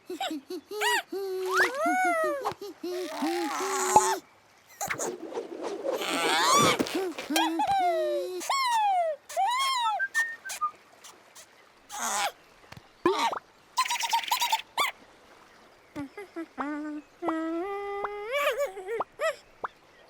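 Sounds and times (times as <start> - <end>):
high squeaky cartoon calls: 6.0 - 7.7, 8.4 - 12.3, 13.1 - 14.9.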